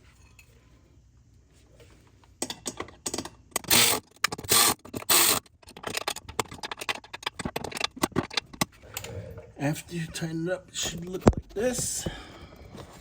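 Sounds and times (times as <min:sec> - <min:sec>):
hand ratchet clicking: 0:03.0 - 0:07.0.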